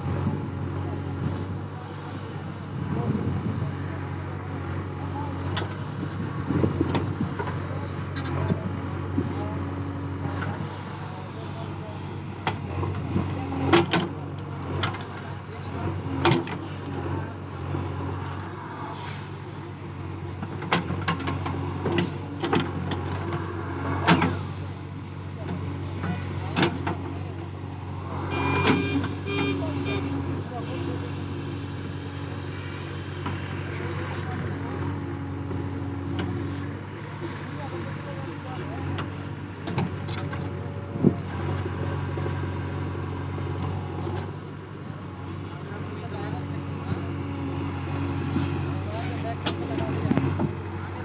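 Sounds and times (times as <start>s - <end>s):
diesel engine running: 0.0s - 51.0s.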